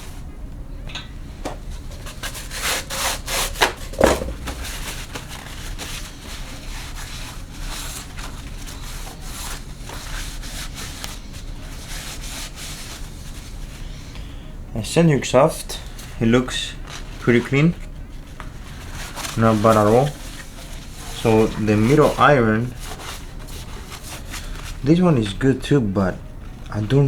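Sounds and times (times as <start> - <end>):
engine parts scraping and rubbing: 1.9 - 8.4, 18.7 - 24.8
sharp knock: 4.0 - 5.0.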